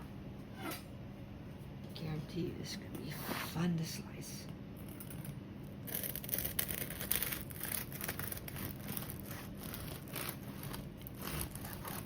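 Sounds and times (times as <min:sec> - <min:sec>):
knife sawing through bread: 0:05.9 - 0:12.0.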